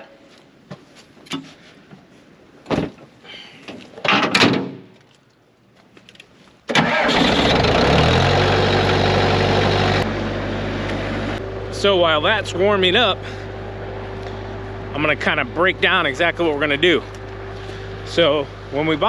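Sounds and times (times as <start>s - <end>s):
skid loader engine idling: 6.9s - 19.0s.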